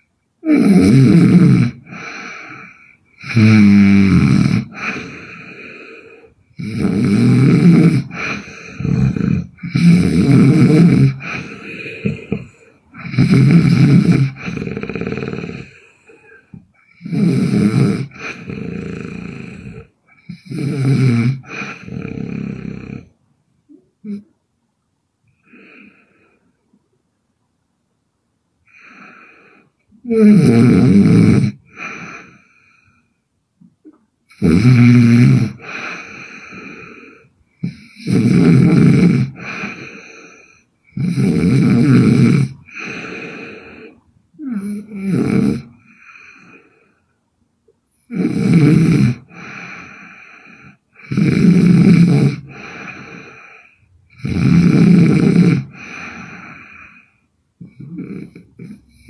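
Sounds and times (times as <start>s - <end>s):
woman snoring loudly: 0.4s - 23.1s, 30.0s - 32.6s, 34.3s - 46.7s, 48.1s - 59.0s
soft breath sound: 4.6s - 6.7s, 7.7s - 17.0s, 39.3s - 41.1s, 41.8s - 48.1s, 49.2s - 51.1s.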